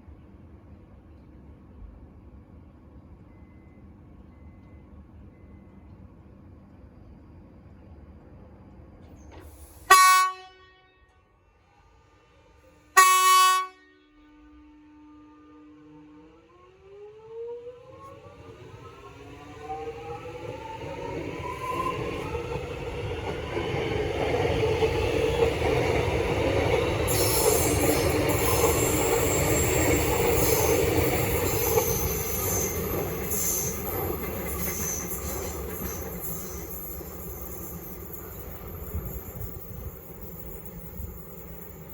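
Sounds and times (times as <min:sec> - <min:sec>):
electric train whine: 0:11.0 - 0:41.9
train wheels rumbling on rails: 0:17.6 - 0:41.9
wheel hiss and squeal: 0:27.1 - 0:41.9.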